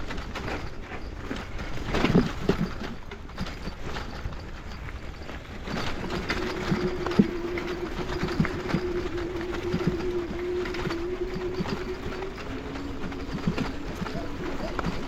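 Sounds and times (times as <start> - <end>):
bicycle rattling and knocking: 0.0 - 15.0
steady low whine: 6.2 - 15.0.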